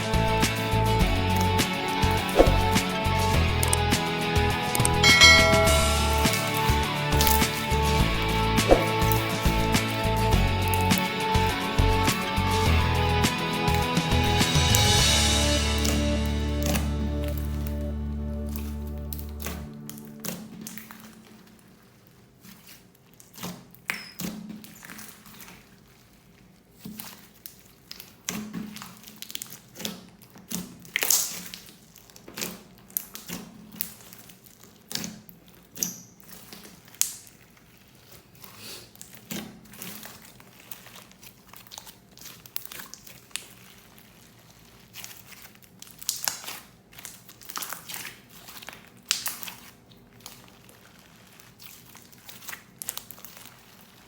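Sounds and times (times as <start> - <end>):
plastic bags crinkling: 33.9 - 54.0.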